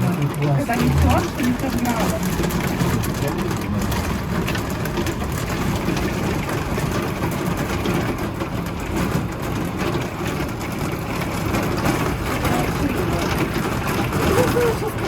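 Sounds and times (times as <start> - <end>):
hail and rain pattering: 0.0 - 15.0
steady low rumble: 0.6 - 1.8.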